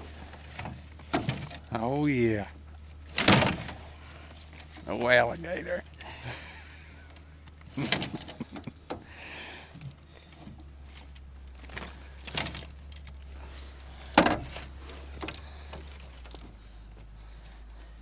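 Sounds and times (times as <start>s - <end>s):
low steady hum: 0.0s - 18.0s
knocks and thumps: 14.1s - 16.3s.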